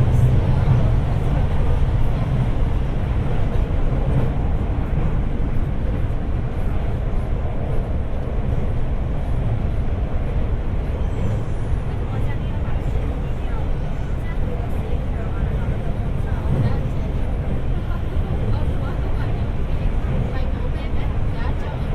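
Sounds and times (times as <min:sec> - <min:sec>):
train rumbling on track: 0:00.0 - 0:21.9.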